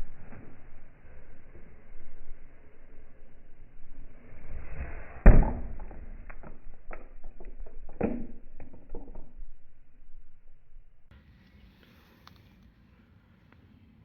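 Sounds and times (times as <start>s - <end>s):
ball hitting plastic controller: 5.3s - 9.7s.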